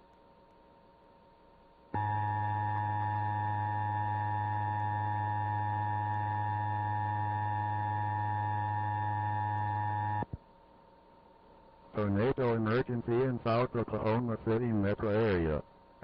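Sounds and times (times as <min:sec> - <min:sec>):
two-tone electronic alarm: 0:02.0 - 0:10.2.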